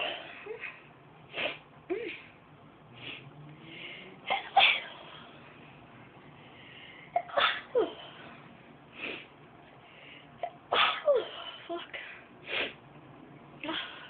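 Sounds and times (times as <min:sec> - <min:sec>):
breathy sounds: 0:02.9 - 0:05.6
woman sneezing: 0:04.3 - 0:05.1, 0:07.2 - 0:08.2, 0:10.4 - 0:11.9.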